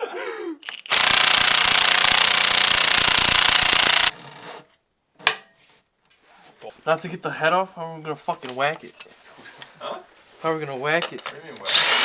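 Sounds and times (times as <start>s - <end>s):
impact wrench hammering: 0.6s - 4.2s.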